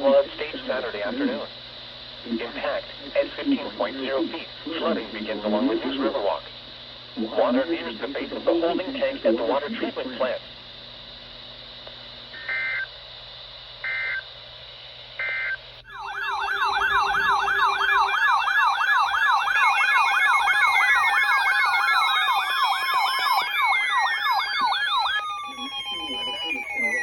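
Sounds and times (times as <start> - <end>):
electronic data tone bursts: 15.2 - 27.0
falling siren wails: 15.8 - 27.0
yelping siren warble: 15.8 - 27.0.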